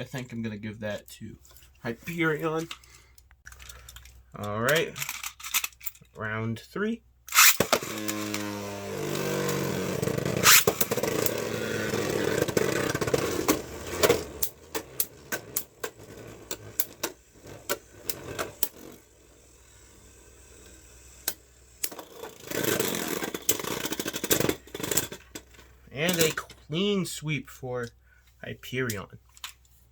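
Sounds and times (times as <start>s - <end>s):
spinning tops whirring: 7.3s - 25.4s.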